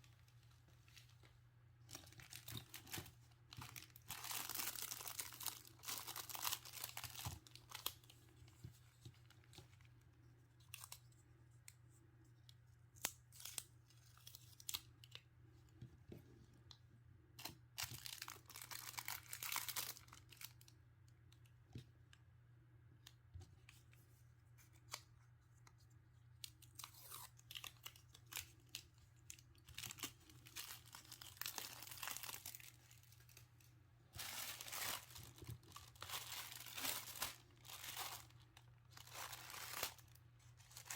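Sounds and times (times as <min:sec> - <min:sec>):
packaging crinkling and tearing: 0:01.9 - 0:08.2, 0:17.4 - 0:20.7, 0:26.6 - 0:33.5, 0:34.1 - 0:40.9.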